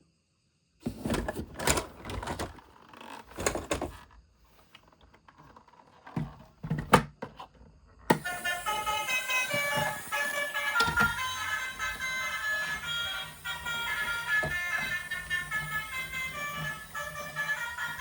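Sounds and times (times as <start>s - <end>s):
music: 8.2s - 18.0s.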